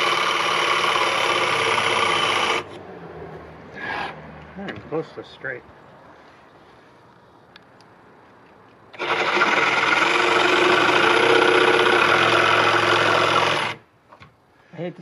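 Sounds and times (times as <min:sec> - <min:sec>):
jig saw motor running: 0:00.0 - 0:02.7, 0:09.0 - 0:13.8.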